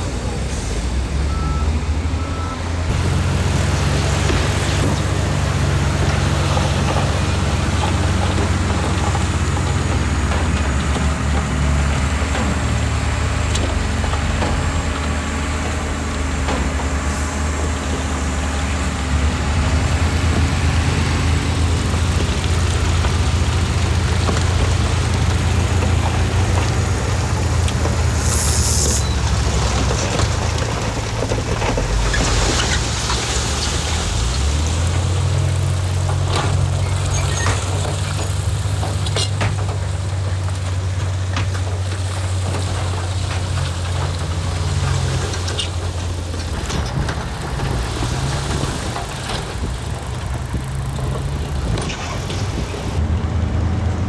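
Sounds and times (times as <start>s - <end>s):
heavy diesel engine droning: 0.0s - 54.0s
short hiss: 28.1s - 29.0s.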